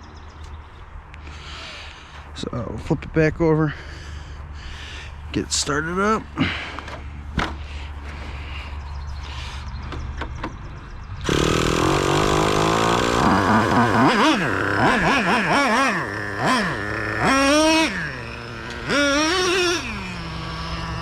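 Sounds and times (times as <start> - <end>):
small engine revving: 11.2 - 21.0.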